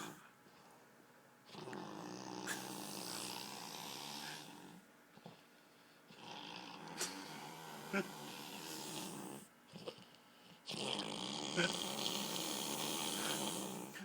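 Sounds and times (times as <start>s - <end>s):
man snoring: 1.6s - 4.8s, 6.2s - 9.5s, 10.7s - 14.0s.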